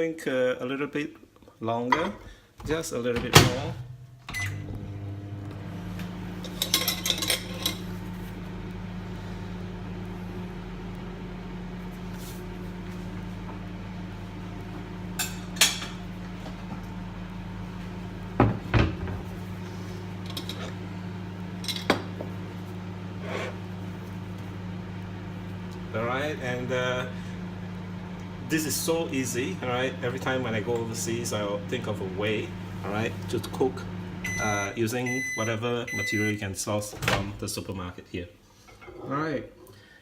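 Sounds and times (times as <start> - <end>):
microwave oven humming: 3.2 - 37.4
dishes and cutlery clinking: 6.5 - 7.8.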